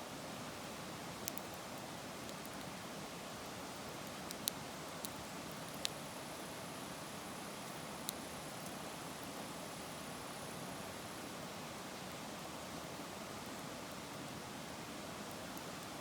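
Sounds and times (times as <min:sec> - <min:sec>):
campfire crackling and popping: 0:01.2 - 0:01.6, 0:03.9 - 0:06.0.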